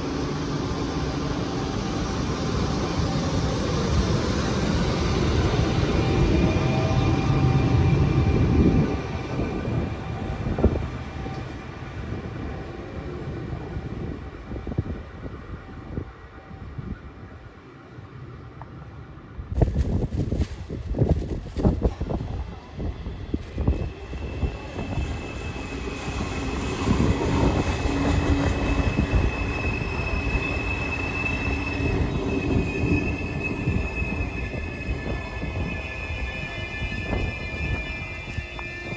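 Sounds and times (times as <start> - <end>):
train rumbling past: 0.0 - 17.4, 19.2 - 38.9
wheels squealing on track: 23.6 - 38.9.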